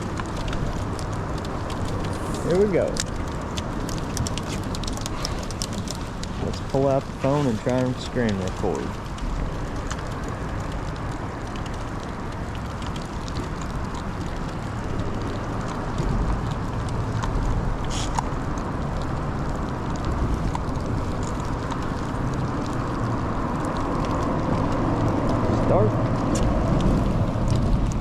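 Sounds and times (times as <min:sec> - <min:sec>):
raindrops ticking: 0:00.0 - 0:28.0
steady rain: 0:00.0 - 0:28.0
wind noise on microphone: 0:08.9 - 0:28.0.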